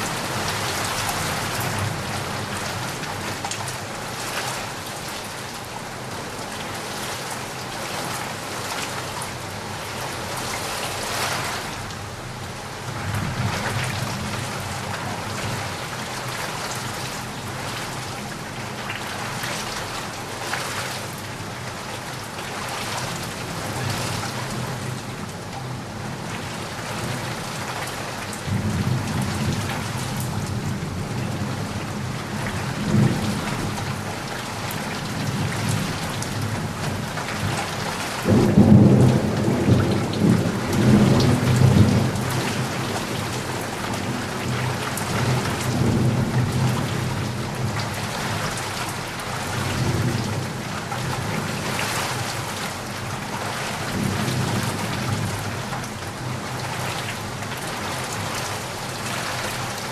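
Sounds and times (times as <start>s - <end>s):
heavy rain falling: 0.0s - 59.9s
thunder rumbling: 38.3s - 47.0s.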